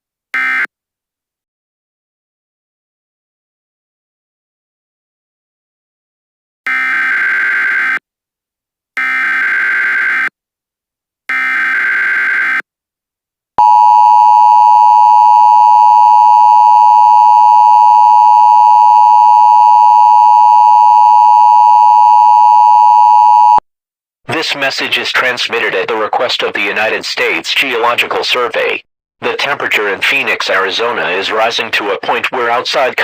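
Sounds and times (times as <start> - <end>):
data tone bursts: 13.6 - 23.6.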